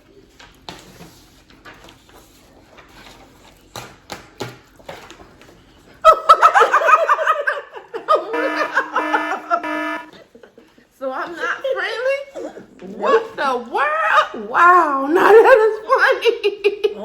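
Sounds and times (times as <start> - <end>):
women laughing loudly: 6.0 - 10.7.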